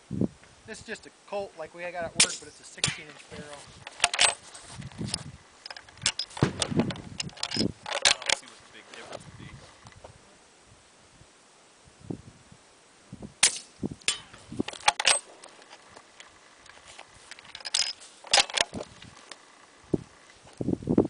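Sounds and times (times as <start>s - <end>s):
gunshots: 6.4s - 6.8s.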